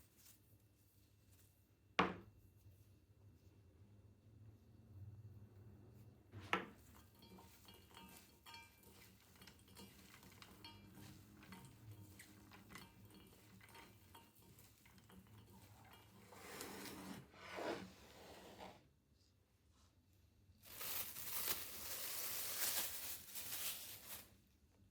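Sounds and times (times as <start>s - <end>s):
utensils knocking against dishes: 6.6s - 17.1s
rustling: 20.6s - 24.6s.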